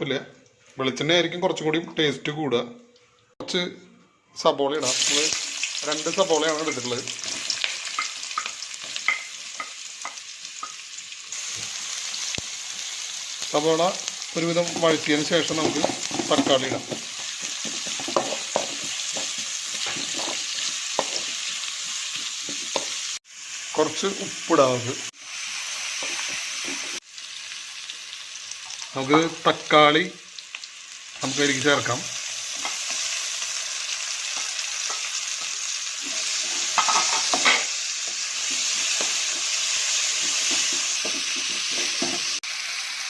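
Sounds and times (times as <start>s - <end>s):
onions sizzling in oil: 4.8s - 43.0s
spatula scraping and tapping pan: 14.7s - 23.0s, 34.4s - 42.4s.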